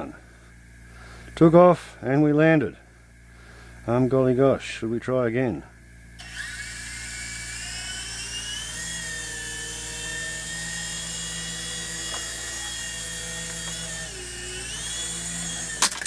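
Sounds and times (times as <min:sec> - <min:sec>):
toy helicopter rotors whining: 0:06.2 - 0:16.0.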